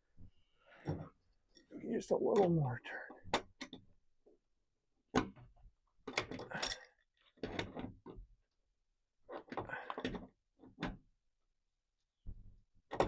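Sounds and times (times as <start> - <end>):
tool and metal hardware clinking: 6.2 - 6.9.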